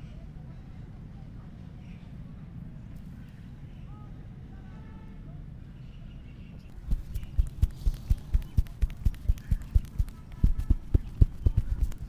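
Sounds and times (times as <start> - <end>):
hands slapping body: 6.8 - 12.0.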